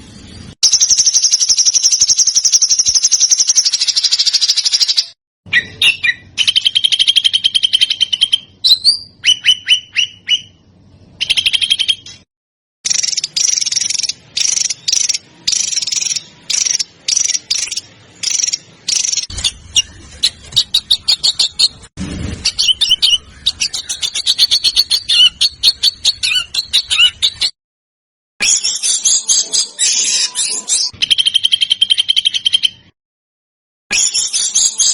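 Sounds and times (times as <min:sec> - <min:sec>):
small songbirds singing: 0:12.9 - 0:21.8, 0:22.6 - 0:27.6.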